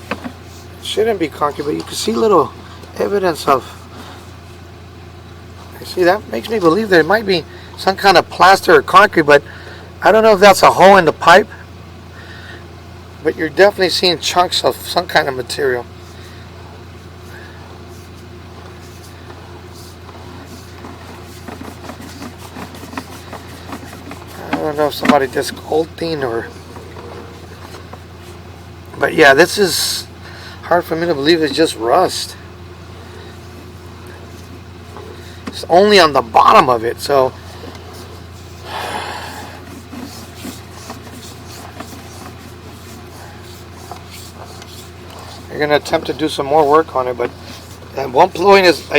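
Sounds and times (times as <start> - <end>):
low engine hum: 0.0 - 48.9
camera scraping inside pipe: 19.8 - 28.4, 39.5 - 48.9.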